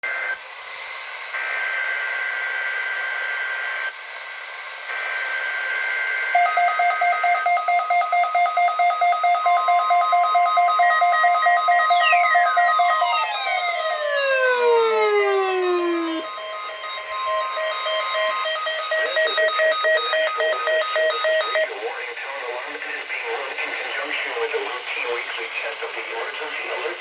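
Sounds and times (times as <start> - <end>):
falling siren-like sweeps: 6.4 - 21.7
steady high electronic tones: 6.4 - 24.1
rapid pulsing beeps: 6.4 - 24.3.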